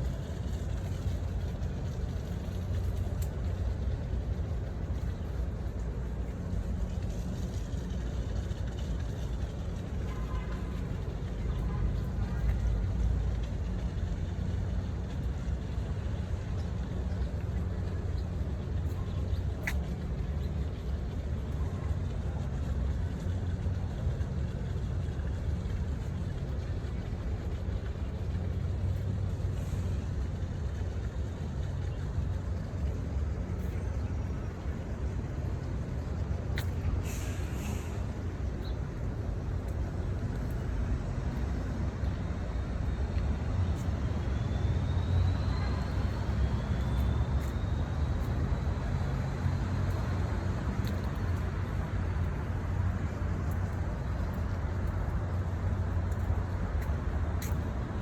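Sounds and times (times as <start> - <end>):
road traffic rumble: 0.0 - 58.0
short hiss: 37.0 - 38.1
faint rising whistle: 44.2 - 48.1.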